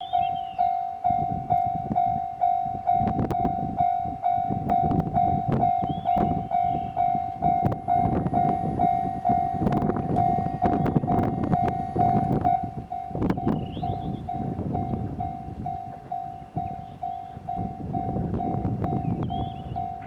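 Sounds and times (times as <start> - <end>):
level crossing warning bell: 0.0 - 20.0.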